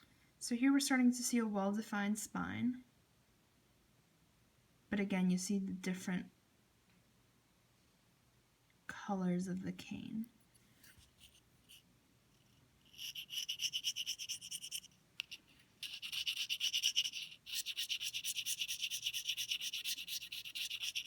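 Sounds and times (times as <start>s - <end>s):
knife scraping reed cane: 12.4s - 21.0s.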